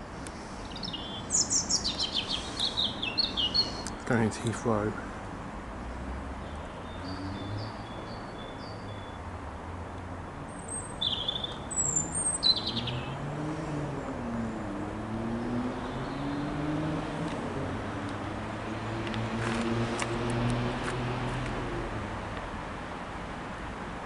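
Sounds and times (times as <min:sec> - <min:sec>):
small birds chirping: 0:00.3 - 0:04.6, 0:06.4 - 0:09.2, 0:10.5 - 0:13.3, 0:14.0 - 0:17.2.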